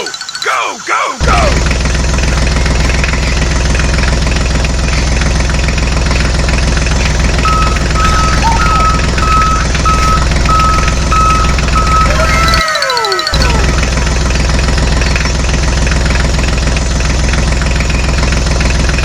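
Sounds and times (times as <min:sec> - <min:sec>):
tractor engine running: 0:01.2 - 0:12.6, 0:13.4 - 0:19.0
reversing beeper: 0:07.0 - 0:14.3.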